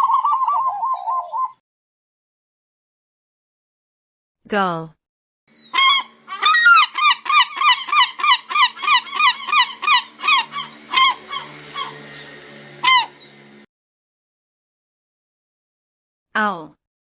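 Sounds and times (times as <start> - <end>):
gull calling: 5.5 - 13.4.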